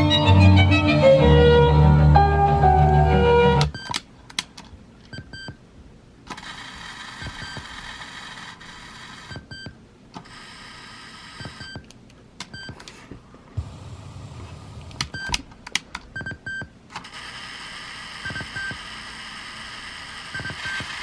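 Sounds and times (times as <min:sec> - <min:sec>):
whirring hiss: 0:13.6 - 0:15.8.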